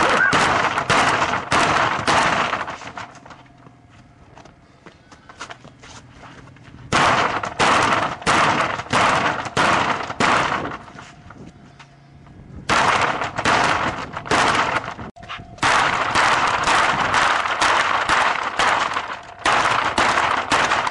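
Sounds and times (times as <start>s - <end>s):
garage door kicked crashing: 0.0s - 3.4s, 6.9s - 11.0s, 12.7s - 20.9s.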